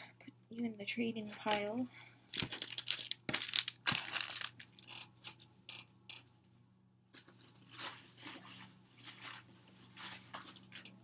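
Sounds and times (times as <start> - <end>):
packaging rustling and crinkling: 2.3 - 4.9, 7.2 - 11.0.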